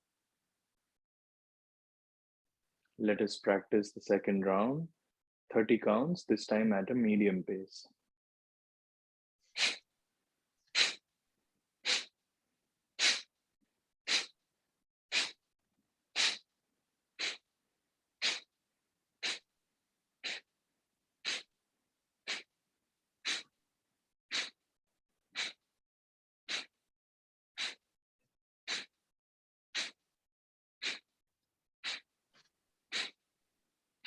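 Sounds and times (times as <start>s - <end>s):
forceful nasal exhalations: 10.7s - 11.0s, 11.8s - 12.1s, 13.0s - 13.3s, 14.1s - 14.4s, 15.1s - 15.4s, 16.2s - 16.4s, 17.2s - 17.5s, 18.2s - 18.5s, 19.2s - 19.5s, 20.2s - 20.5s, 21.2s - 21.5s, 22.3s - 22.5s, 23.2s - 23.5s, 24.3s - 24.6s, 25.4s - 25.6s, 26.5s - 26.8s, 27.6s - 27.8s, 28.7s - 29.0s, 29.8s - 30.0s, 30.8s - 31.1s, 31.8s - 32.1s, 32.9s - 33.2s.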